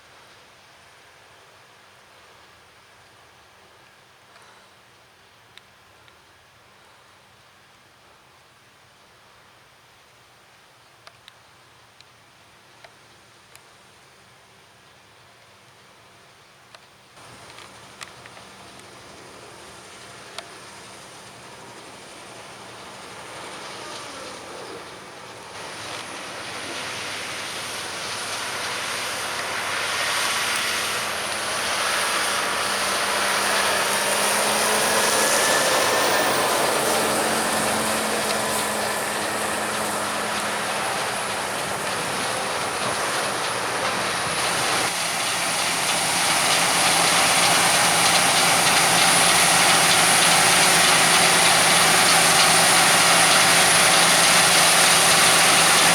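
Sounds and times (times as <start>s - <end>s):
harvest machinery engine rattling: 17.2s - 55.9s.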